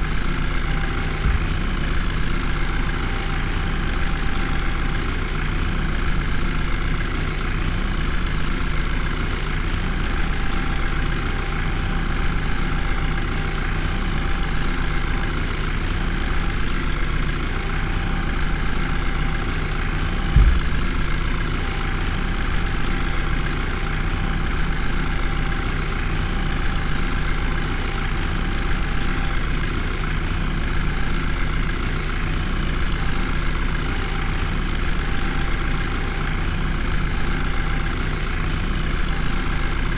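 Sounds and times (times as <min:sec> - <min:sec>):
diesel engine idling: 0:00.0 - 0:39.9
low thump: 0:01.2 - 0:01.8, 0:20.3 - 0:21.1.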